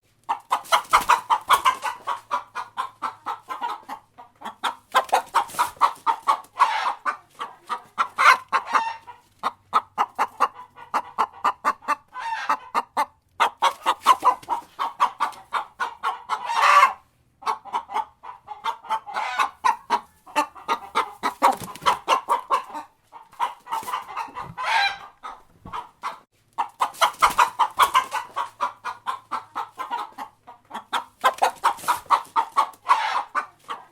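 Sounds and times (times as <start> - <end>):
chicken clucking: 0.1 - 33.9
chicken drawn-out call: 0.3 - 9.3, 10.0 - 33.9.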